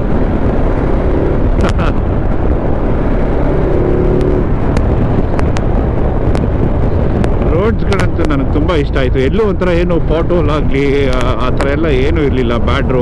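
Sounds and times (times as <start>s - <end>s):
motorcycle engine running: 0.0s - 12.0s
wind noise: 0.0s - 13.0s.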